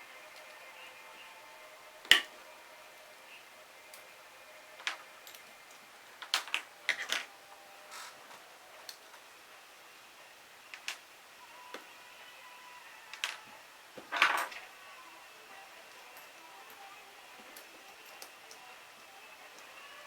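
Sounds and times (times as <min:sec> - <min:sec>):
small metal tools clicking and tapping: 0:04.8 - 0:07.3, 0:13.1 - 0:14.7, 0:15.8 - 0:19.7.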